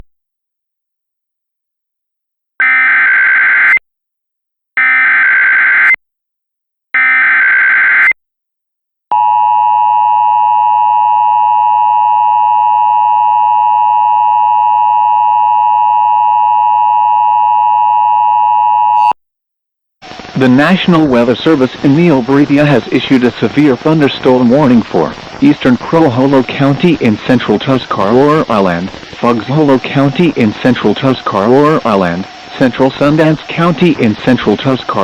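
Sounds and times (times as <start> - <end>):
steady loud attention tone: 20.0 - 35.0
digital header chirps: 20.4 - 35.0.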